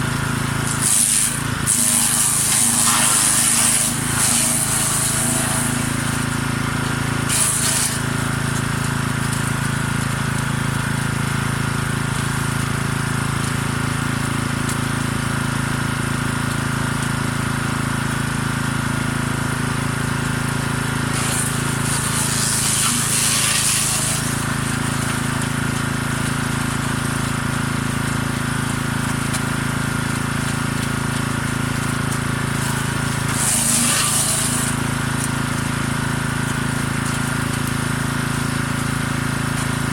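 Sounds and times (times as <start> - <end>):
wood chipper running: 0.0 - 39.9
harsh grinding of shredded cuttings: 0.2 - 8.8, 21.1 - 25.6, 31.9 - 35.5.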